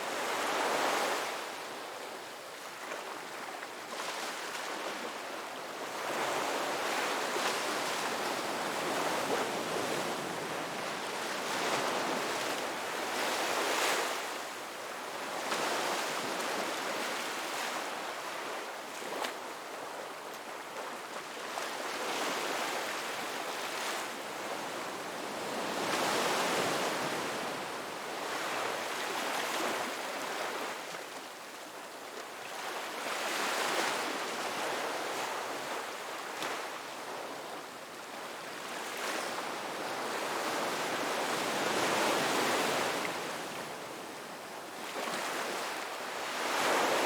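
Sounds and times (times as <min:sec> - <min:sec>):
ocean waves breaking on beach: 0:44.8 - 0:47.0.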